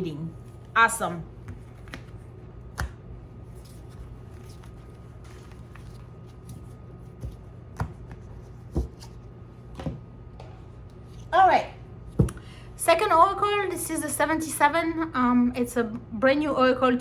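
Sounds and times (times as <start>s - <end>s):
cards clicking and rustling: 1.4s - 9.2s.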